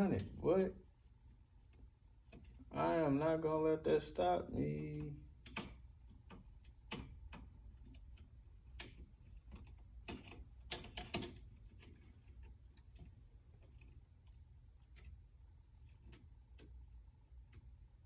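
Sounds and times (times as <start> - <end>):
hands clicking and tapping thermostat: 1.6 - 2.7, 4.9 - 18.0.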